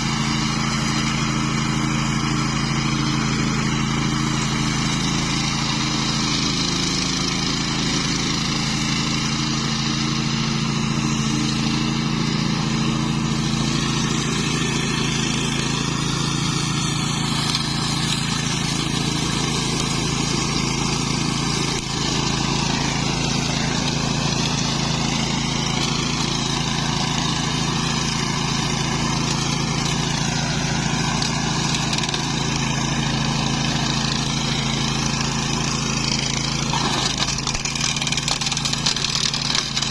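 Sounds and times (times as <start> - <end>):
flail mower running: 0.0 - 39.9.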